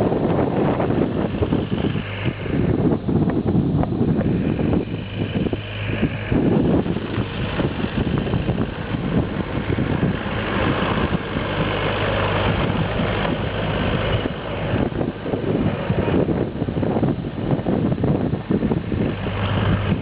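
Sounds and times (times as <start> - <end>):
diesel engine running: 0.0 - 20.0.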